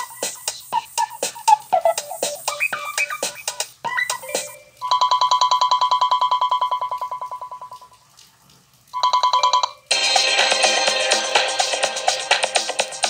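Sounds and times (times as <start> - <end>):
busy musical ringtone: 1.7 - 7.9, 9.0 - 11.1
phone ringtone trill: 4.0 - 7.8, 9.0 - 11.1.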